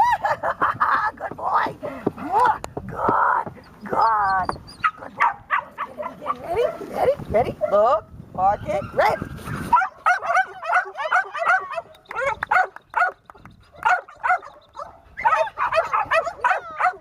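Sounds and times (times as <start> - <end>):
puppy barking and whining: 3.6 - 6.8, 8.8 - 13.2, 13.8 - 17.0.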